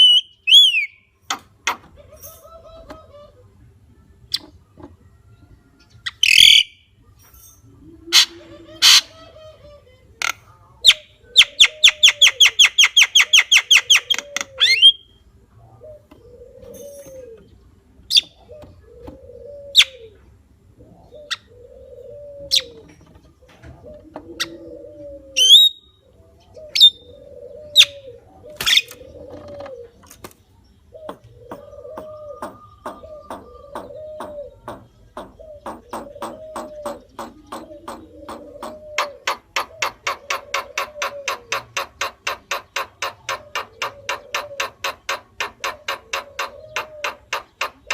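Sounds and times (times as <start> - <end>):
low cooing note: 23.8 - 25.5.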